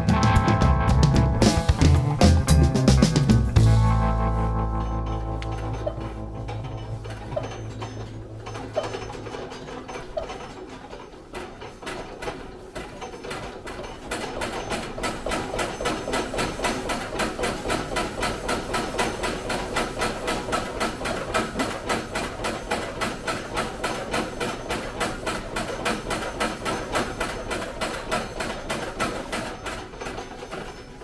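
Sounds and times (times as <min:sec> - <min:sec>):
rice huller rapid knocking: 0:00.0 - 0:04.5.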